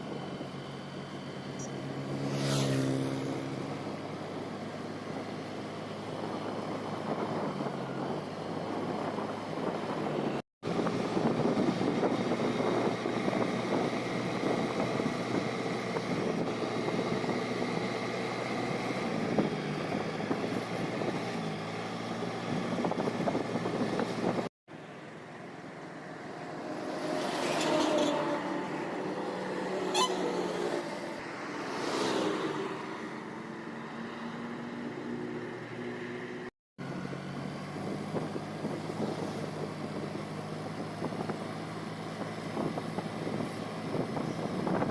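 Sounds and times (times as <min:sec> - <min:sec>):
highway traffic: 0:00.0 - 0:44.9
vehicles passing close by: 0:00.0 - 0:44.9.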